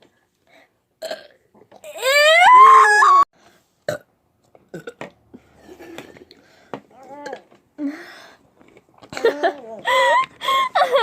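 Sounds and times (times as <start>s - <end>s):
person burping: 1.0s - 1.4s, 3.9s - 4.1s, 4.7s - 5.1s.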